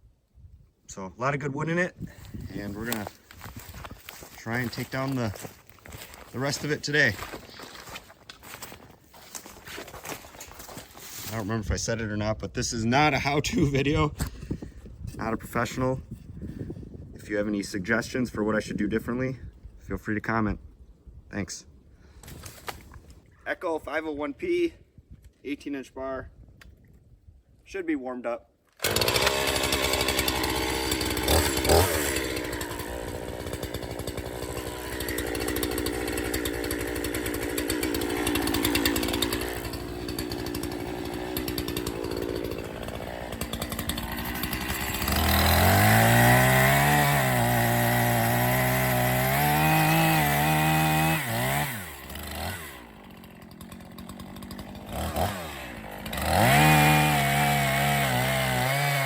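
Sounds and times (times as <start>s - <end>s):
chainsaw cutting wood: 2.1s - 11.5s, 28.7s - 59.0s
chainsaw idling and revving: 2.2s - 11.5s, 28.8s - 59.0s.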